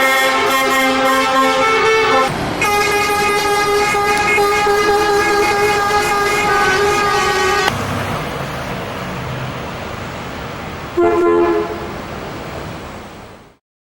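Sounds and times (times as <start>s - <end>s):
coach horns honking: 0.0s - 7.8s, 11.0s - 12.1s
vehicle engines and traffic rumble: 0.0s - 13.6s.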